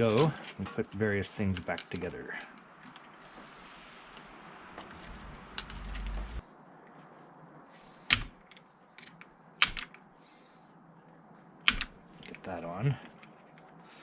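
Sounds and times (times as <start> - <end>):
parts clicking into place: 8.1 - 10.0
rustling handling noise: 11.0 - 14.0.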